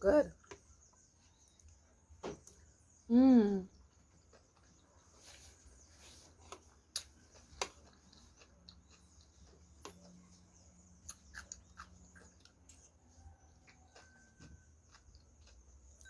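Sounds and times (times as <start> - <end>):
faint low hum: 0.0 - 16.0
person chewing food: 3.8 - 16.0.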